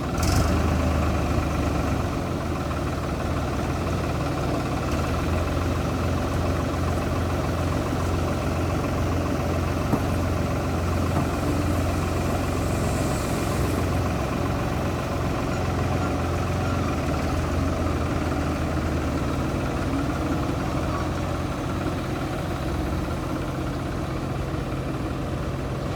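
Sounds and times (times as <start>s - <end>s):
construction machine engine running: 0.0s - 25.9s.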